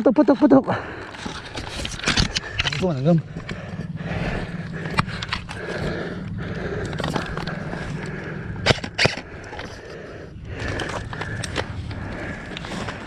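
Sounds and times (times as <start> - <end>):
steady low rumble: 0.8 - 13.0.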